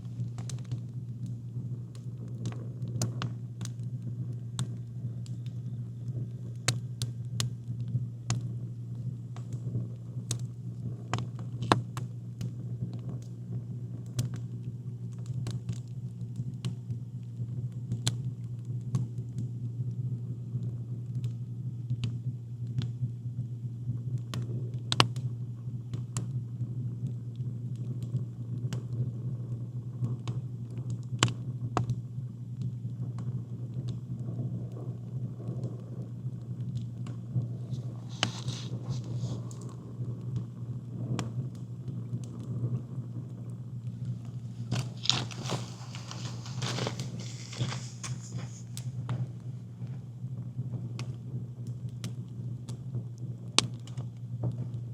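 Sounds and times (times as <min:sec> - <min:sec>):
steady low rumble: 0:00.0 - 0:18.8, 0:34.2 - 0:53.5
campfire crackling and popping: 0:00.0 - 0:54.9.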